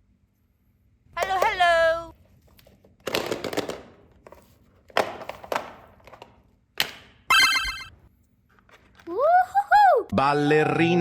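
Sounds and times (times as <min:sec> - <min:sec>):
pulsing ringing tone: 0:07.3 - 0:07.9.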